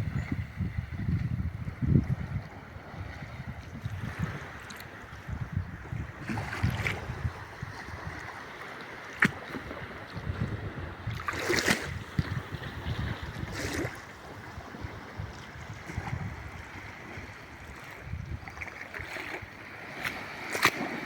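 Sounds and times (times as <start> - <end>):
wind buffeting microphone: 0.0 - 8.5, 9.2 - 21.0
sea waves washing ashore: 0.0 - 21.0.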